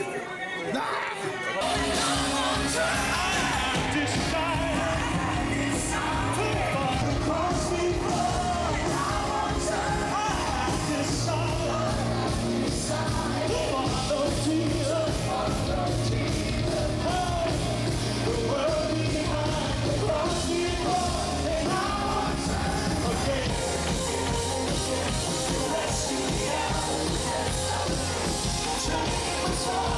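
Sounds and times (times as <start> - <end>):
rock band with singing: 0.0 - 29.9.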